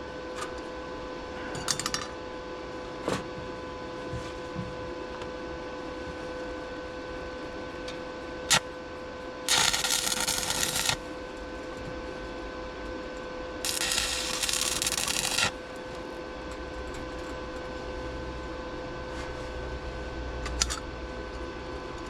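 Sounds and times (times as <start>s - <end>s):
arc welding crackle: 9.5s - 11.1s, 13.6s - 16.0s
steady faint hum: 9.5s - 11.6s, 13.5s - 17.3s.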